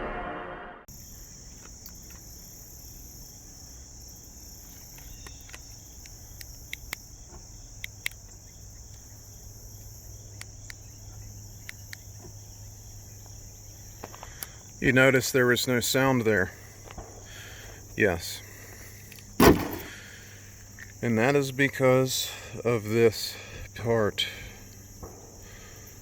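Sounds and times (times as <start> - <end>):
insects chirring: 0.9 - 26.0
sharp clicks: 4.7 - 7.1, 7.7 - 9.1.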